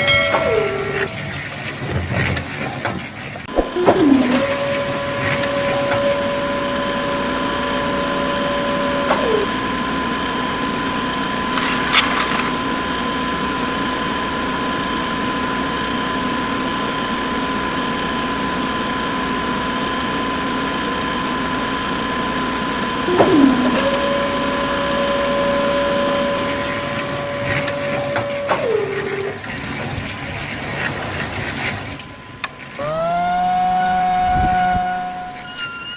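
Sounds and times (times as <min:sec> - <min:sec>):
small toy motors whining: 0:32.8 - 0:35.8.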